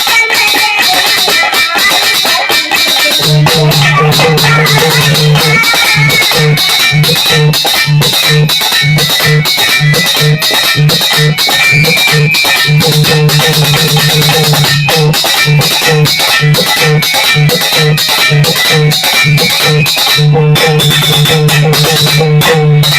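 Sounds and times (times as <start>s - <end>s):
plucked-string melody: 0.0s - 22.9s
steady percussion beat: 0.0s - 22.9s
pulsing bass line: 1.7s - 22.9s.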